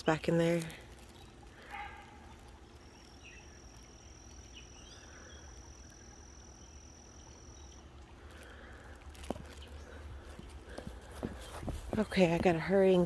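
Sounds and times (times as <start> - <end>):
insect trilling: 0.2 - 8.5
faint chirps: 0.9 - 10.0.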